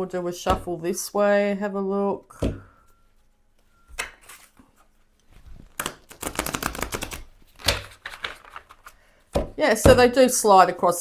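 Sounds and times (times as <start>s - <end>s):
cards being shuffled: 5.3s - 9.0s.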